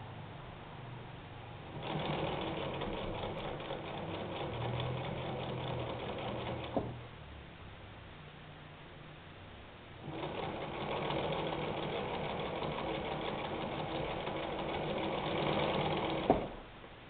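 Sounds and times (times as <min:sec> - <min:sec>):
sewing machine running: 0:01.6 - 0:07.0, 0:10.0 - 0:16.6
sewing machine stopping click: 0:01.7 - 0:07.0, 0:10.0 - 0:16.6.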